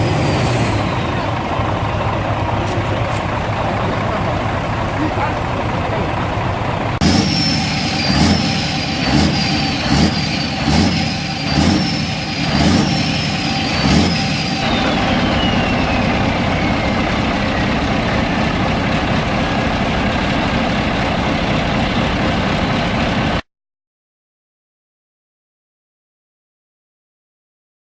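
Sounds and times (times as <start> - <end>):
truck engine revving: 0.0 - 23.4
turbo whistle: 7.0 - 17.8.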